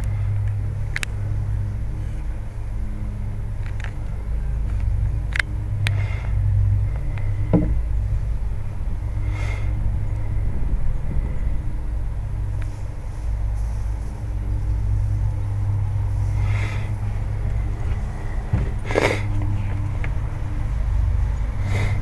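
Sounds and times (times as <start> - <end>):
low machine rumble: 0.0 - 22.0
brief knock: 7.5 - 7.8.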